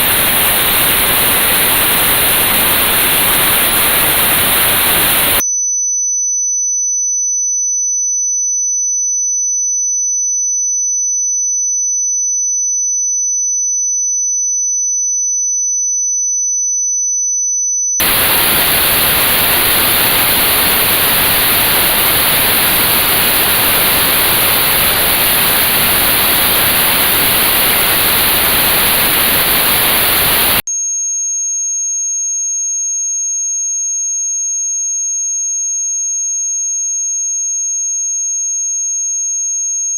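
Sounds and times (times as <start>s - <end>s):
high-pitched pure tone: 0.0s - 5.4s, 18.0s - 30.6s
notched white noise hiss: 0.0s - 5.4s, 18.0s - 30.6s.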